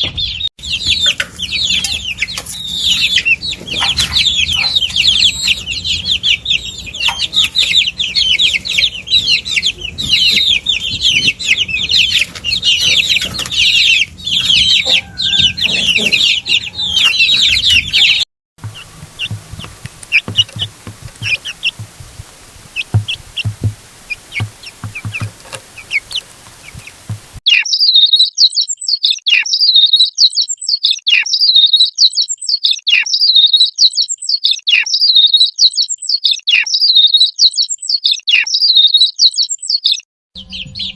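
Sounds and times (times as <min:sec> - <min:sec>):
baby chicks peeping: 0:00.0 - 0:40.9
low knocks: 0:18.6 - 0:27.4.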